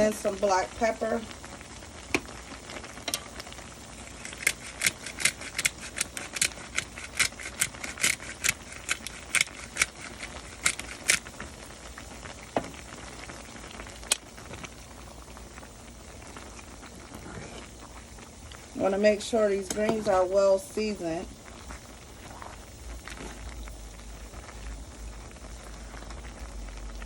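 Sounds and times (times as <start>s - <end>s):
pot simmering: 0.0s - 27.0s
pepper shaker clicking: 4.2s - 11.2s.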